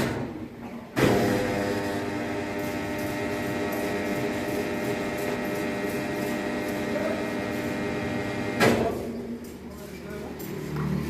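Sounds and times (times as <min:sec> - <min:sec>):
wood-sawing machine humming: 0:01.2 - 0:08.6.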